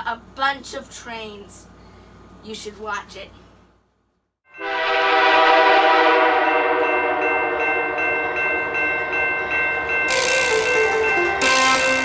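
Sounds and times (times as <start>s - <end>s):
train horn chord: 4.5s - 8.4s, 10.1s - 12.0s.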